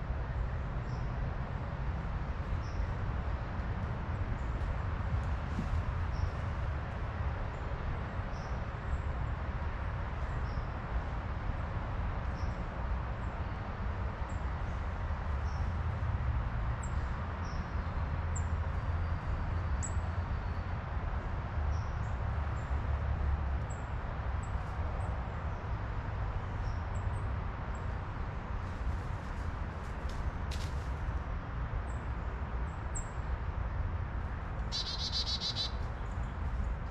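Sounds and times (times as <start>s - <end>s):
small birds chirping: 34.6s - 36.8s.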